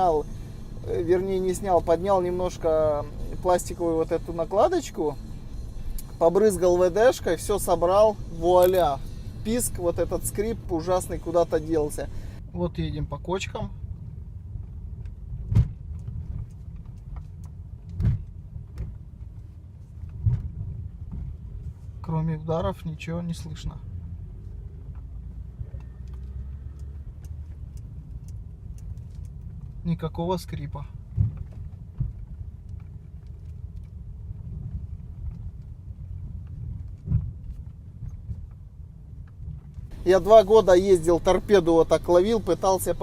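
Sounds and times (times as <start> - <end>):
car road rumble: 0.0 - 43.0.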